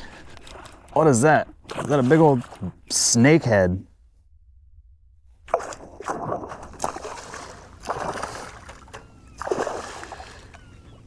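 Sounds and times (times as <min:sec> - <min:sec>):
water splashing: 0:00.0 - 0:03.2, 0:05.5 - 0:11.0
faint bird chirps: 0:07.1 - 0:11.0.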